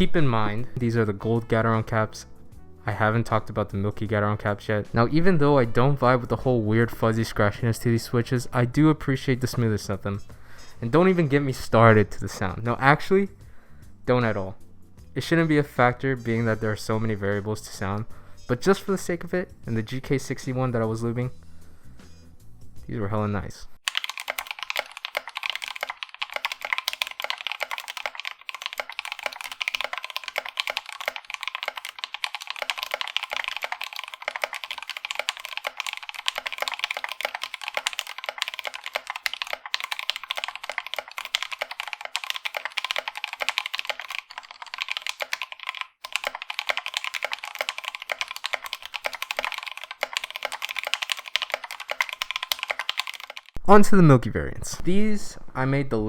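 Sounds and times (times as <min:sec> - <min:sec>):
fast typing on mechanical keyboard: 0:23.8 - 0:53.6.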